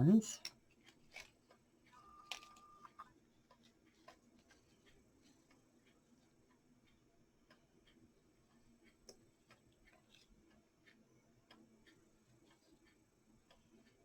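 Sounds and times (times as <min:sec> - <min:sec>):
small clicks and taps of flower stems: 0:03.5 - 0:06.6.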